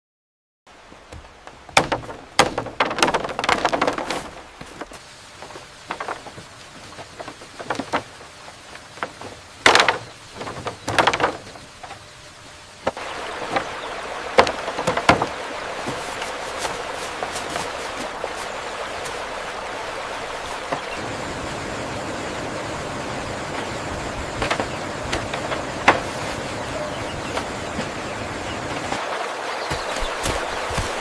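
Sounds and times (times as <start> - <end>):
steady hiss: 0.7 - 31.0
knocks and clatters: 1.2 - 12.0, 14.4 - 19.3, 24.4 - 26.5.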